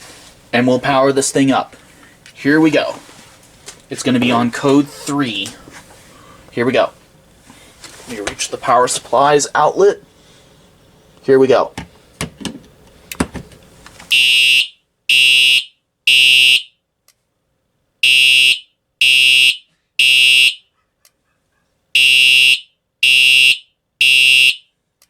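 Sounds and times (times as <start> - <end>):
fire alarm horn blasts: 14.1 - 16.8, 18.0 - 20.7, 22.0 - 24.8.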